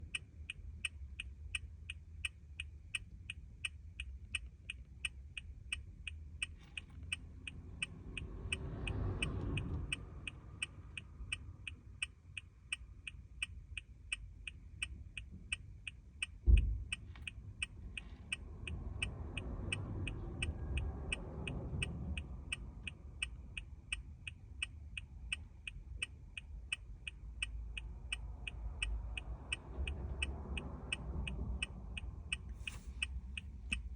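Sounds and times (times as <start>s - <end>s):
loud thump: 16.4s - 17.0s.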